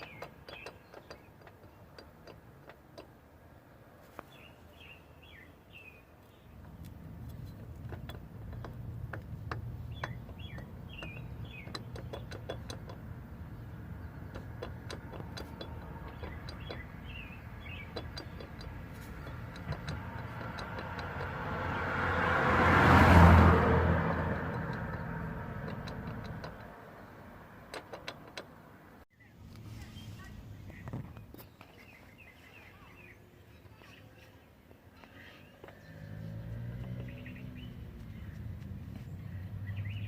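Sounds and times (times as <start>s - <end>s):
low engine hum: 0.0s - 40.0s
bird chirps: 4.2s - 8.8s, 9.5s - 21.0s, 29.1s - 40.0s
vehicle passing by: 6.6s - 27.8s, 35.0s - 40.0s.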